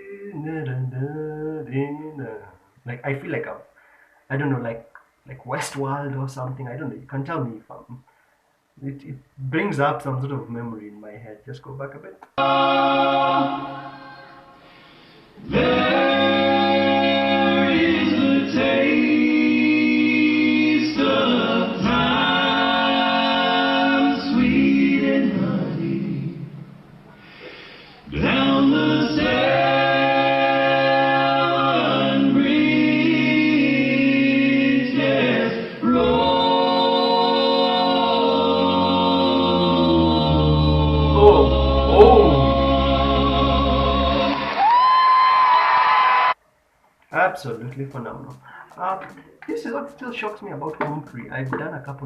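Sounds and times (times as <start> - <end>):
male a cappella group singing: 12.4 - 26.6, 27.4 - 44.6.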